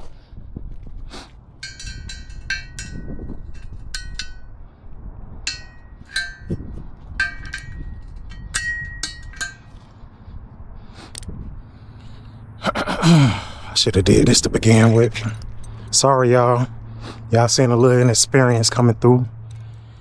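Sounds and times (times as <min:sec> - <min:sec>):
metal tools clinking on metal: 0:01.6 - 0:04.6, 0:05.5 - 0:09.9, 0:14.1 - 0:16.6.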